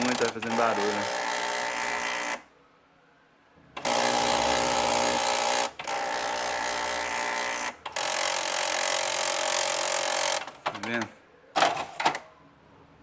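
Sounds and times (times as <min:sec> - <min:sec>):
printer carriage grinding whine: 0:00.0 - 0:02.4.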